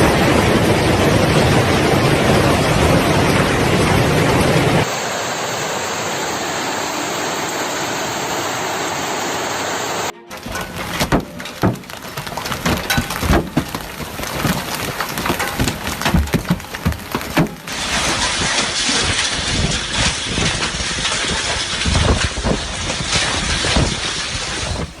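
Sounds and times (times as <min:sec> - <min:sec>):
hailstones pelting hard surfaces: 0:10.3 - 0:25.0
steady hiss: 0:23.5 - 0:25.0.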